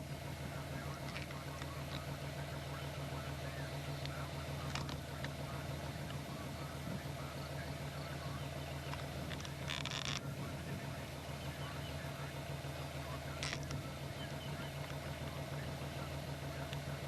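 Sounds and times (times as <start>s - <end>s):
vehicle engine idling: 0.0s - 17.0s
faint clicks: 4.0s - 6.2s, 13.3s - 13.9s, 16.6s - 16.9s.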